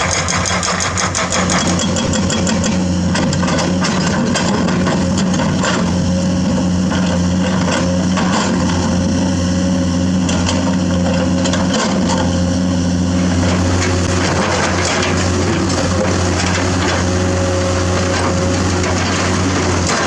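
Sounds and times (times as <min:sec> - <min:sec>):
excavator diesel engine running: 0:00.0 - 0:20.0
bucket knocking and scraping rock: 0:01.0 - 0:05.2.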